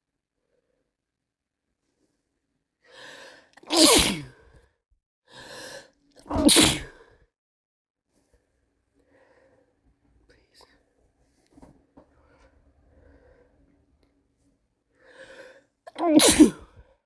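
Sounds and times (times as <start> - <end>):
person sneezing: 3.6 - 4.4, 6.3 - 7.0, 15.9 - 16.8.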